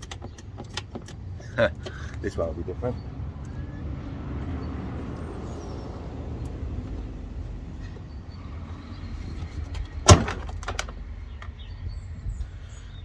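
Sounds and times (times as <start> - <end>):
low rumbling handling noise: 0.0 - 12.6
light clicks: 6.4 - 6.6.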